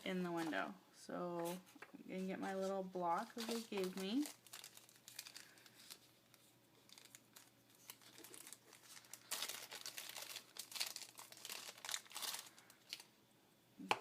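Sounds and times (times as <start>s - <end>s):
packaging crinkling: 3.2s - 13.1s.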